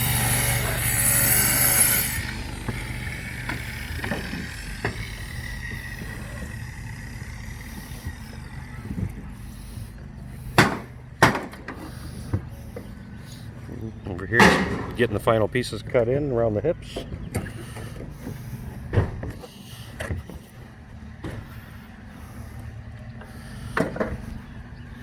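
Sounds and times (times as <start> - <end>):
sharp loud knocks: 10.6 - 11.8.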